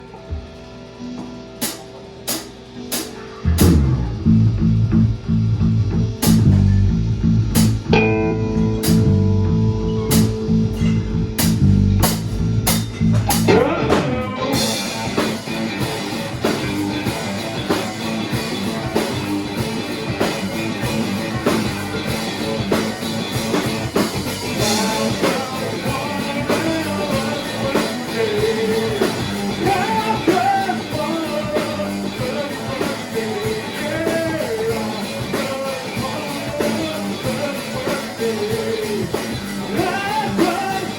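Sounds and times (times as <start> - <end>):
rock band playing: 0.0 - 40.9
person singing: 13.4 - 15.4, 24.6 - 40.9.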